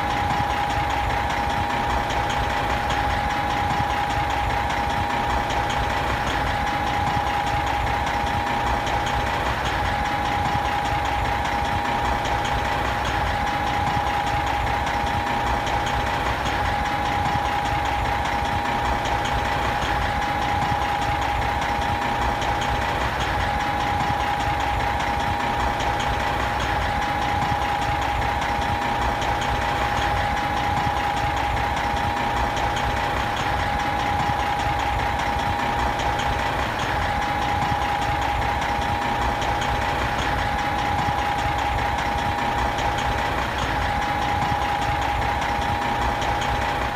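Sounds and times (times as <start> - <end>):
diesel truck engine idling: 0.0 - 46.9.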